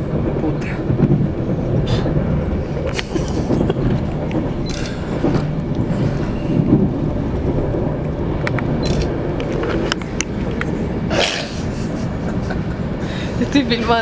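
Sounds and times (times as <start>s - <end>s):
train rumbling on track: 0.0s - 14.0s
sharp track clicks: 2.2s - 6.0s, 6.6s - 10.8s.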